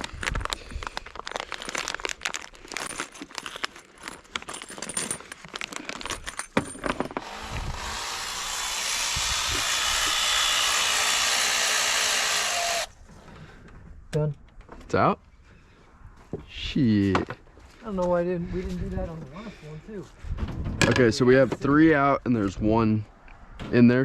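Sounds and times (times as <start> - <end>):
metal tools clinking: 2.7 - 7.2
power impact gun running: 7.2 - 12.9.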